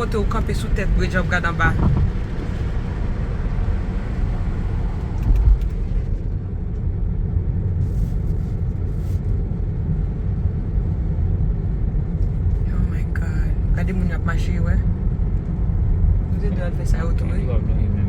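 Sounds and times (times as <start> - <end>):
car road and engine rumble: 0.0 - 18.0
car bump: 1.4 - 3.2.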